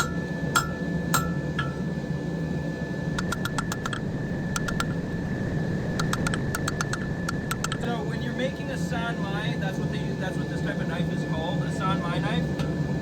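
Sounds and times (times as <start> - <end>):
hammer ringing on anvil: 0.0 - 1.9
steady hum: 0.0 - 13.0.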